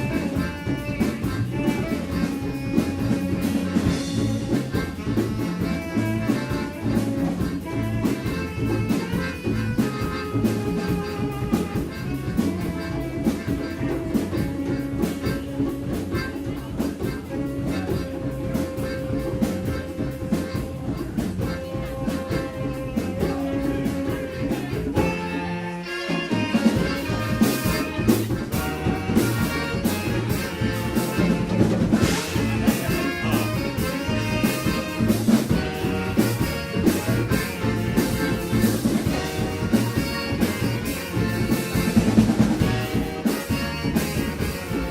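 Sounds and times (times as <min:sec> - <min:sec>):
brass band playing dance tune: 0:00.0 - 0:44.9.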